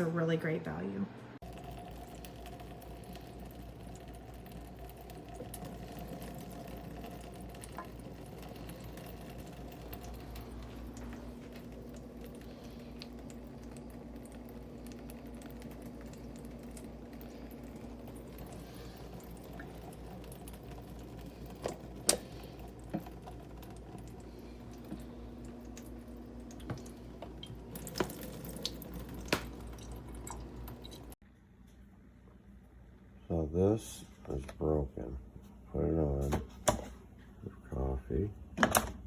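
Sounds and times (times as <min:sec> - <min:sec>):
coffee maker humming: 0:01.4 - 0:31.2, 0:32.3 - 0:39.0
water dripping: 0:01.4 - 0:31.2.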